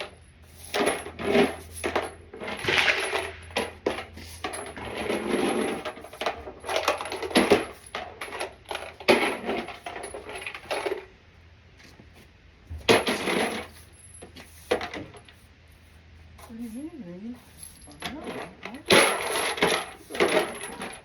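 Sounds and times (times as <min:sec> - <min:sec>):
brass cases clinking: 0:00.0 - 0:11.0, 0:17.4 - 0:21.0.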